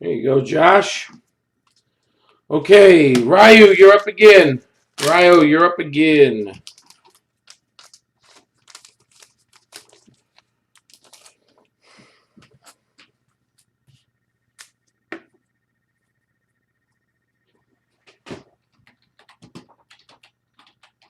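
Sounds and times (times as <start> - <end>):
faint steady tone: 10.1 - 18.7.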